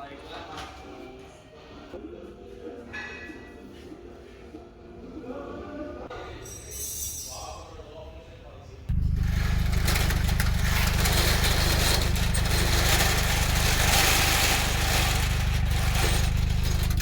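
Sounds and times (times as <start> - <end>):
vehicle engine running: 8.9 - 17.0.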